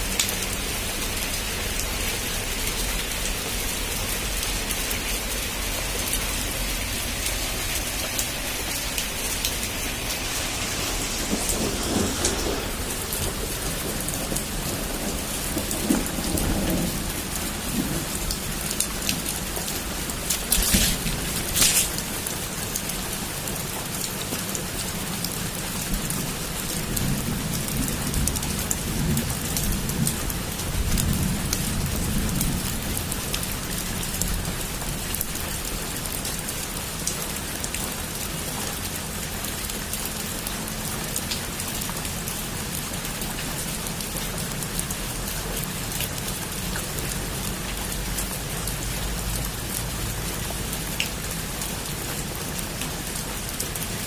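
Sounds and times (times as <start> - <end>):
heavy rain on a roof: 0.0 - 54.0
thunder rumbling: 6.3 - 22.5.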